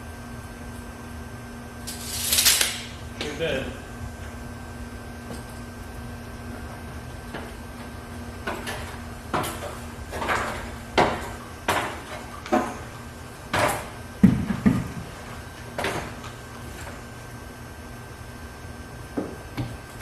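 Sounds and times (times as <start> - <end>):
wood knocking and clunking: 13.5 - 15.1.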